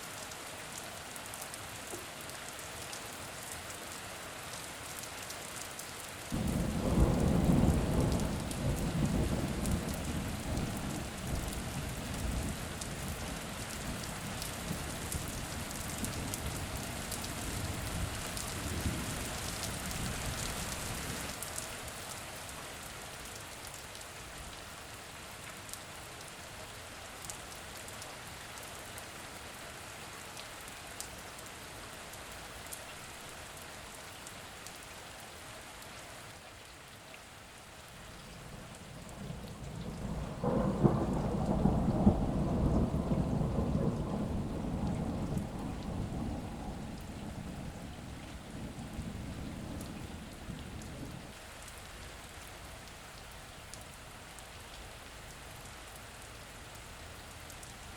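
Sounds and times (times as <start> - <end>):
steady rain falling: 0.0 - 57.9
thunder rumbling: 6.4 - 12.6, 38.4 - 51.3.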